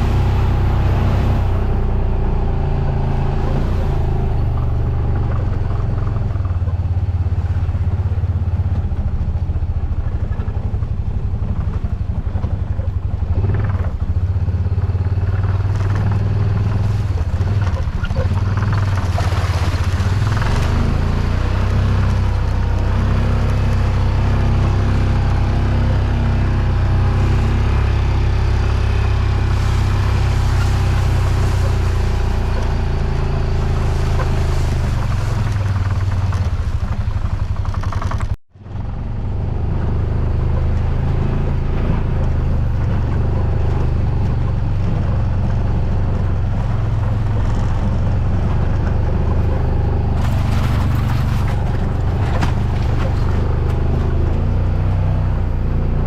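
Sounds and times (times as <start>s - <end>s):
vehicle engine running: 0.0s - 56.0s
rattling and clatter: 29.5s - 38.4s, 42.3s - 54.2s.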